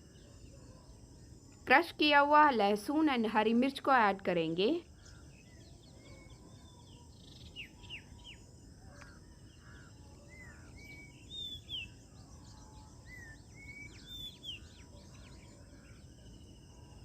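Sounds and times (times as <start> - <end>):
low background noise: 0.0 - 17.0
birds chirping and whistling: 5.0 - 16.1.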